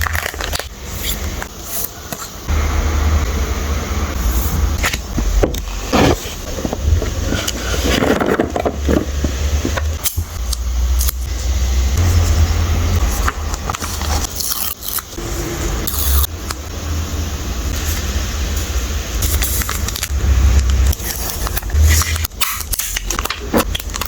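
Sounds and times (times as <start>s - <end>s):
plastic packaging crinkling: 0.0s - 2.3s, 13.1s - 15.2s, 19.2s - 24.0s
steady low rumble: 2.4s - 14.3s.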